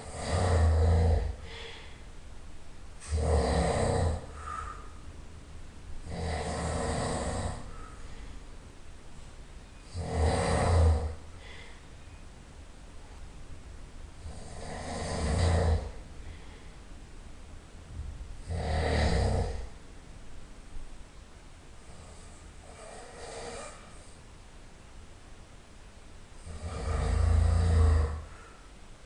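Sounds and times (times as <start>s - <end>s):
person snoring loudly: 0.0s - 1.6s, 3.0s - 4.6s, 6.0s - 7.7s, 9.9s - 11.2s, 14.2s - 16.0s, 18.4s - 19.8s, 21.9s - 24.0s, 26.4s - 28.3s.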